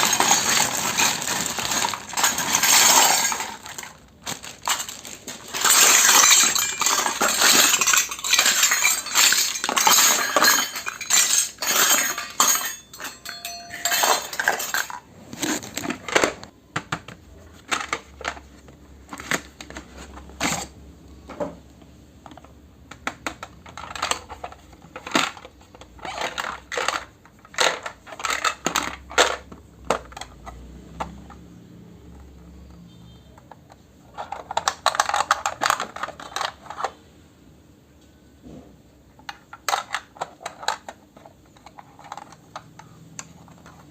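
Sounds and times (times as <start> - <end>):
toy cookware clinking: 0.0 - 3.8, 5.5 - 15.0
rustling: 0.0 - 16.0.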